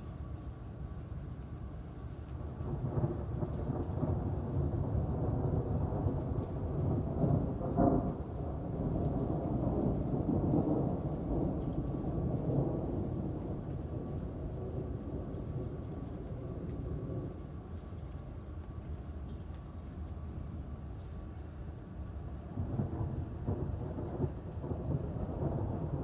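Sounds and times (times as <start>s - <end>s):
steady rain: 0.0s - 26.0s
rolling thunder: 2.4s - 17.7s, 22.5s - 26.0s.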